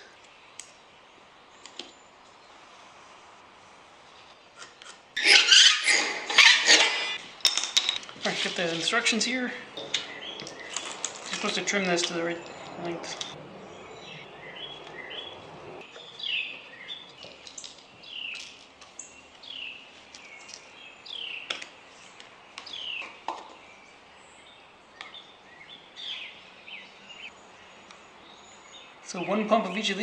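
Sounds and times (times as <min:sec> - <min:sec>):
low steady background noise: 0:00.0 - 0:30.0
birds singing: 0:05.2 - 0:07.2, 0:08.4 - 0:30.0.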